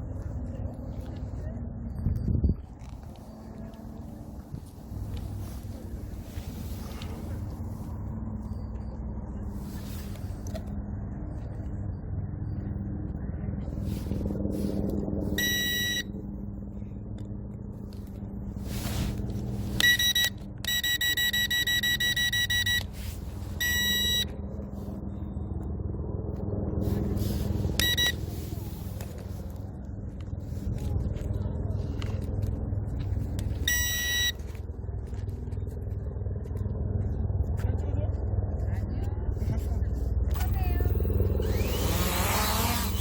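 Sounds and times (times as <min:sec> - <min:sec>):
steady low hum: 0:00.0 - 0:43.0
electronic warning beeps: 0:15.4 - 0:16.2, 0:19.8 - 0:23.0, 0:23.6 - 0:24.4, 0:27.8 - 0:28.3, 0:33.6 - 0:34.4.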